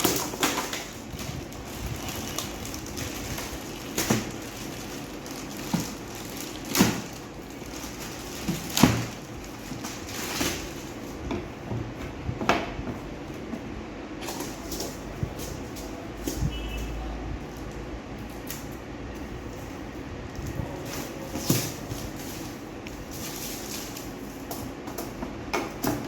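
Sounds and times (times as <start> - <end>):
objects knocking and clunking: 8.1 - 16.5.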